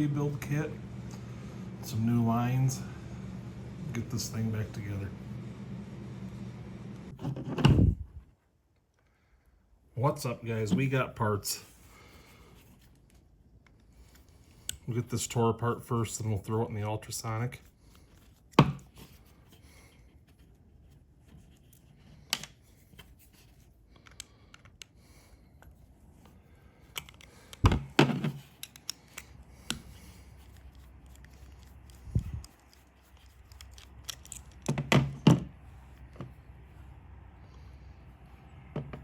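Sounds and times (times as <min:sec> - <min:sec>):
small parts and tools clicking: 0:21.6 - 0:25.0, 0:25.6 - 0:34.9.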